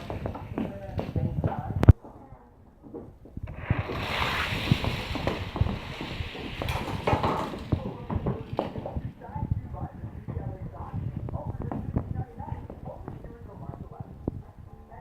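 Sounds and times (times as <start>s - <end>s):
toy cars rolling on plastic track: 3.6s - 9.0s.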